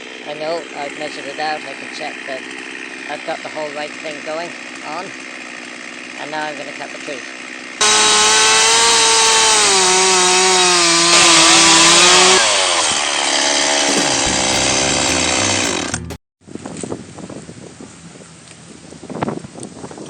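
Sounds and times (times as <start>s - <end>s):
chainsaw cutting tree trunk: 0.0s - 16.2s.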